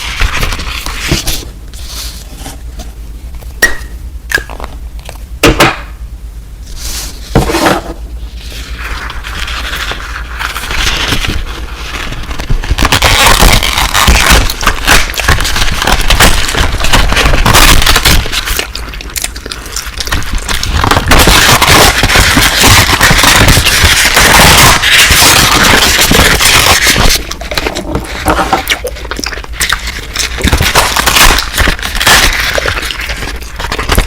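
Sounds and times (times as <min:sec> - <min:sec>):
crunchy chewing: 0:12.1 - 0:34.0.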